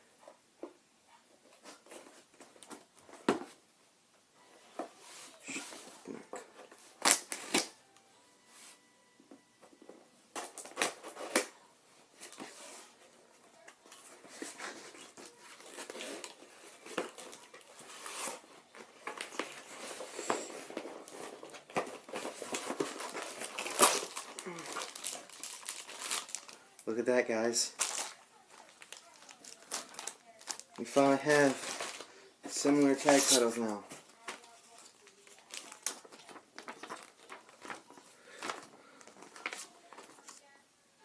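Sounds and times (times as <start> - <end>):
wrapping crinkling: 13.6 - 40.5.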